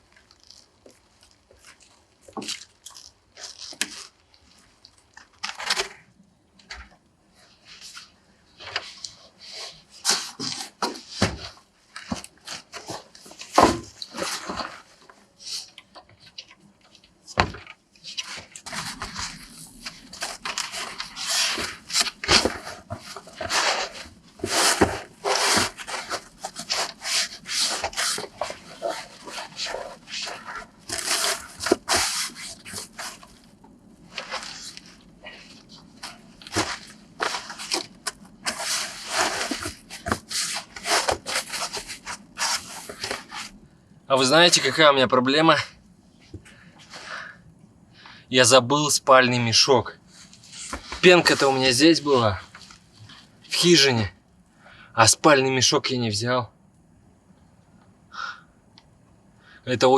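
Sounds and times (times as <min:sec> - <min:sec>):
gear scraping on wooden boards: 0:18.0 - 0:35.4, 0:36.0 - 0:43.5.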